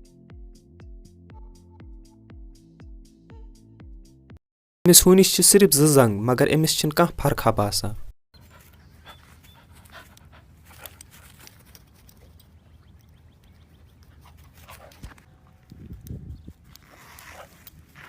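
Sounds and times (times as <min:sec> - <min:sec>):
dog panting: 0:08.4 - 0:15.7.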